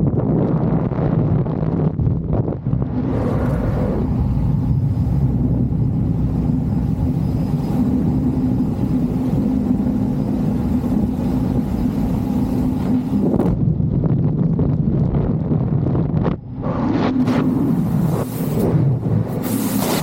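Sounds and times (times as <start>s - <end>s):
turboprop engine and propeller drone: 0.0s - 20.0s
rushing air: 2.2s - 13.8s, 16.1s - 20.0s.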